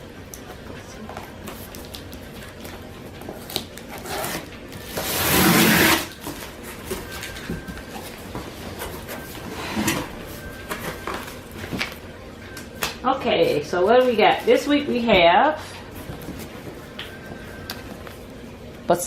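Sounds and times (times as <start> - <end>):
cardboard packaging rustling: 1.4 - 12.1.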